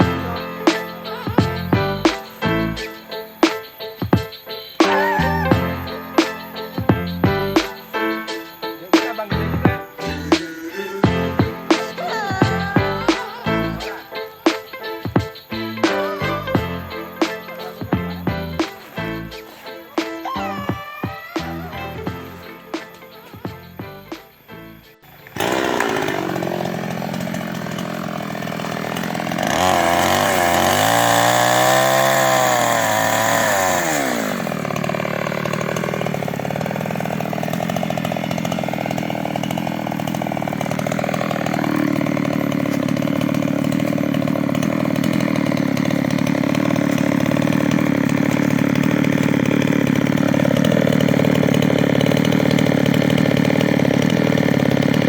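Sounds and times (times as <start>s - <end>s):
chainsaw cutting wood: 0.0s - 55.0s.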